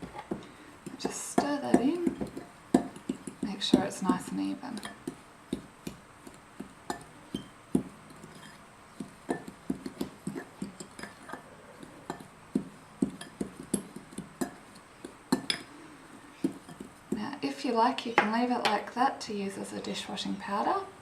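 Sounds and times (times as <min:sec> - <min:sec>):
spoon scraping a mixing bowl: 0:00.8 - 0:05.6, 0:06.2 - 0:12.4.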